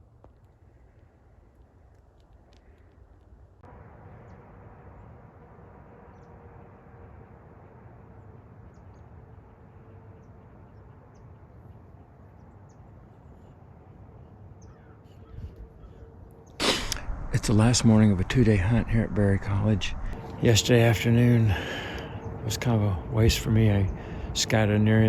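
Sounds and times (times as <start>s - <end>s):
faint steady hum: 0.0s - 25.0s
faint bird chirps: 10.1s - 16.6s
background hiss: 16.6s - 23.1s.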